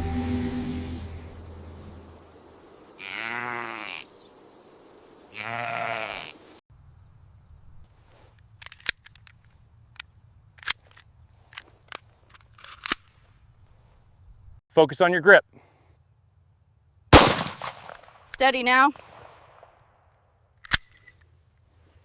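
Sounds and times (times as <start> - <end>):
sheep bleating: 3.0 - 4.1, 5.3 - 6.4.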